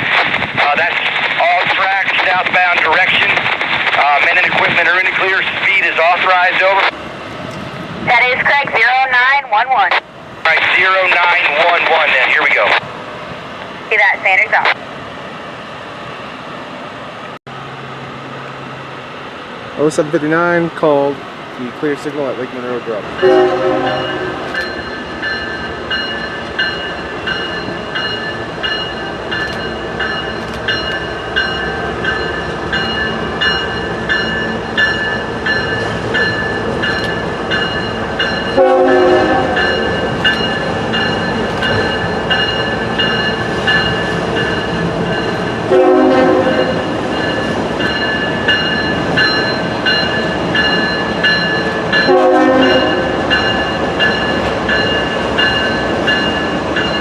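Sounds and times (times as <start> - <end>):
train wheels clicking over rail joints: 20.6 - 57.0
high-pitched ringing: 23.1 - 57.0.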